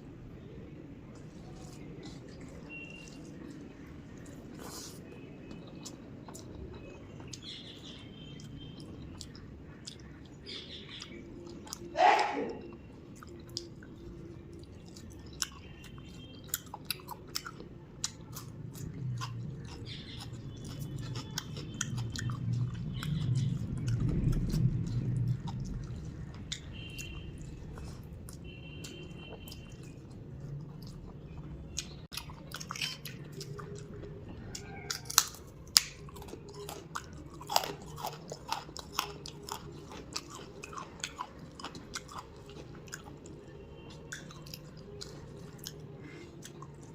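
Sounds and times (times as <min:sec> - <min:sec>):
chewing and mouth sounds: 0:00.3 - 0:46.9
crunchy bites: 0:34.6 - 0:43.3.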